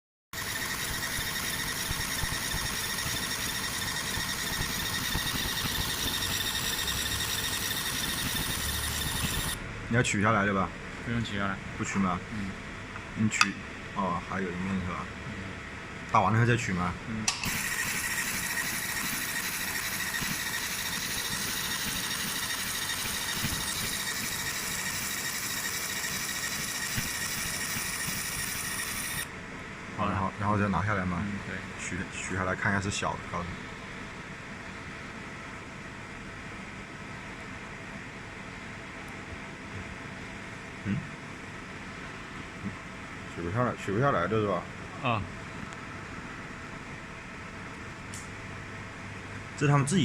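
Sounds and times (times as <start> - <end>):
machine hiss: 0.4 - 9.6, 17.3 - 29.3
laser machine high-pitched whine: 0.4 - 9.7, 17.3 - 29.3.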